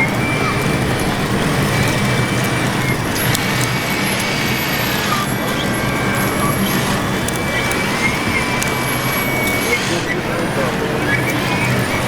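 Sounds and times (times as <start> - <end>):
faint clicks: 0.0 - 9.6
thin high whine: 0.0 - 12.0.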